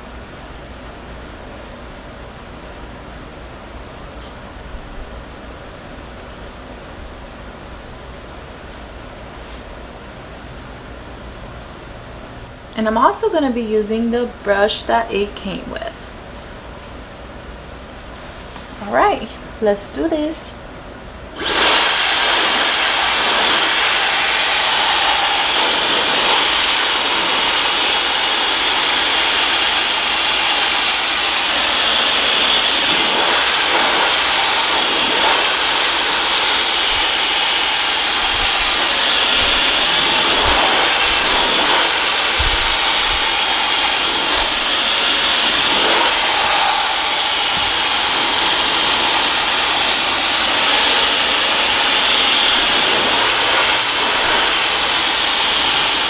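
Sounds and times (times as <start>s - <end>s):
hair dryer blowing air: 21.4s - 56.0s.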